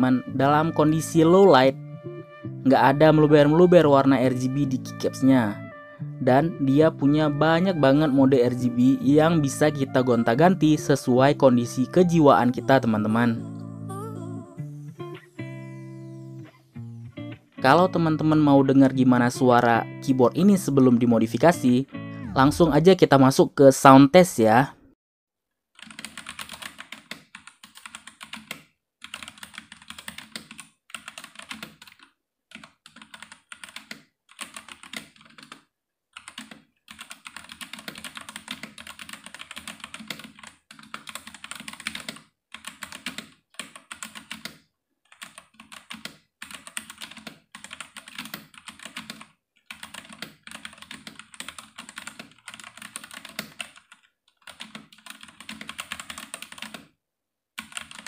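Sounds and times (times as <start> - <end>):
mechanical keyboard typing: 25.8 - 35.6, 36.2 - 56.9, 57.6 - 58.0.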